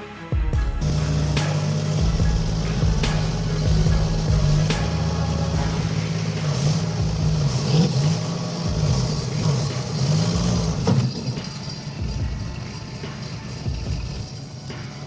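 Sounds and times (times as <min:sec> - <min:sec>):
diesel engine under changing load: 0:00.8 - 0:11.9.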